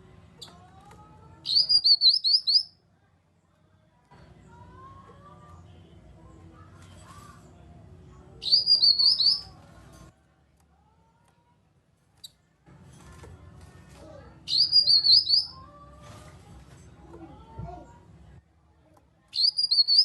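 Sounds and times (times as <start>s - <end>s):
faint bird chirps: 1.4s - 2.8s, 8.4s - 9.6s, 14.5s - 15.7s, 19.4s - 20.0s.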